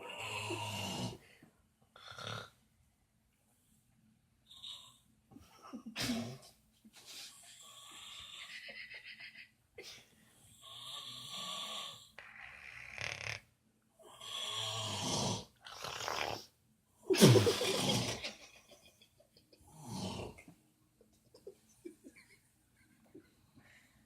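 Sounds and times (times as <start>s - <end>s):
person snoring: 0.0s - 1.2s, 10.6s - 13.4s, 14.0s - 16.5s, 17.1s - 18.2s, 19.7s - 20.4s.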